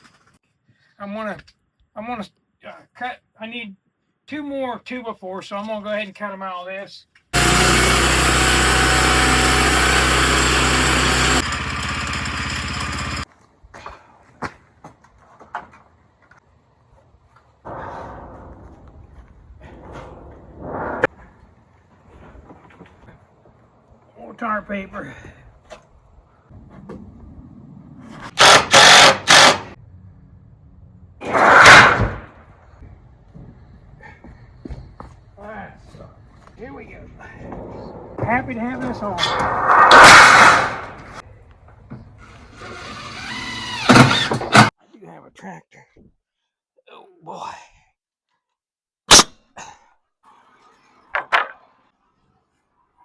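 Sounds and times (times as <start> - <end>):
sawmill engine running under load: 7.4 - 13.2.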